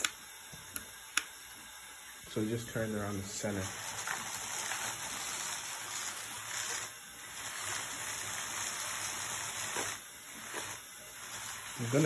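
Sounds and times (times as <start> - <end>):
small motors whirring: 2.4 - 12.0.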